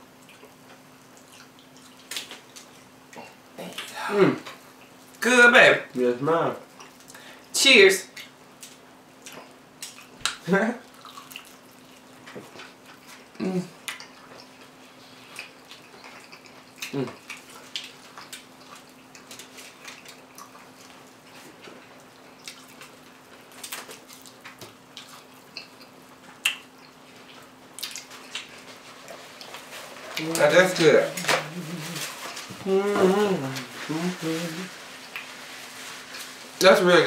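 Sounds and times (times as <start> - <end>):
faint steady hum: 0.0 - 37.0
chewing and crunching: 0.2 - 5.2, 6.6 - 7.2, 8.2 - 32.6
person humming: 13.4 - 13.8, 31.1 - 34.8.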